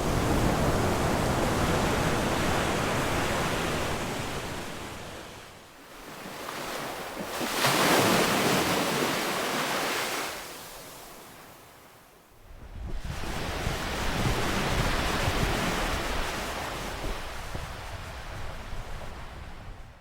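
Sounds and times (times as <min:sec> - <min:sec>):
ocean waves crashing: 0:00.0 - 0:11.5.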